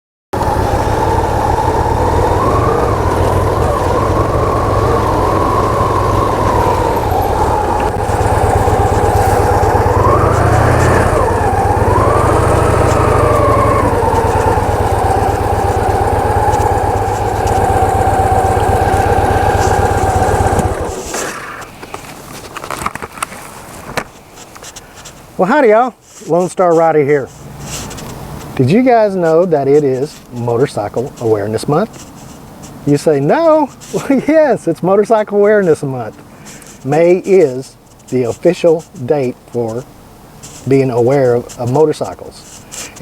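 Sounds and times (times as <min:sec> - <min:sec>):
motorcycle engine running: 0:00.4 - 0:22.2.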